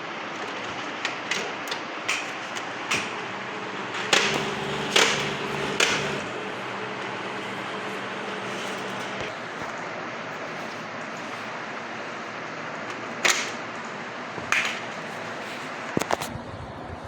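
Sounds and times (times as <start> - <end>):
printer mechanism clicking: 0.3 - 9.8, 12.7 - 16.3
motor humming: 0.3 - 16.1
printer clunks: 0.4 - 9.7, 12.9 - 15.2.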